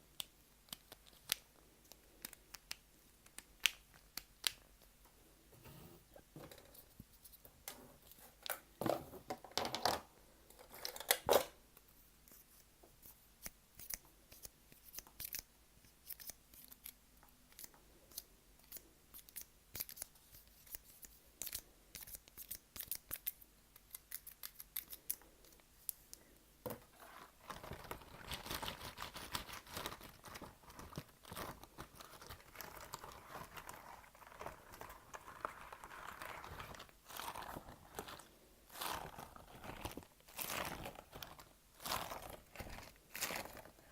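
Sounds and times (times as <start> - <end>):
crinkling and rustling: 26.6 - 43.9.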